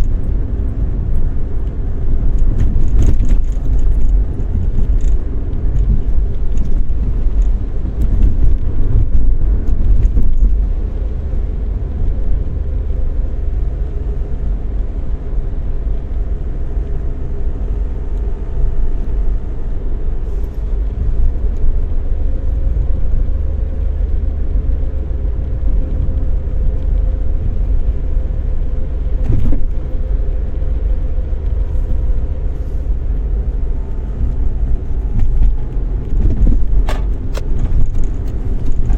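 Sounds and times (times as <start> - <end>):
car engine and road rumble: 0.0 - 38.9.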